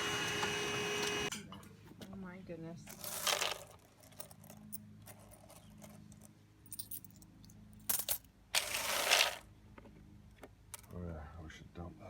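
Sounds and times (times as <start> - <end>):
coins jingling in coin box: 2.9 - 9.4.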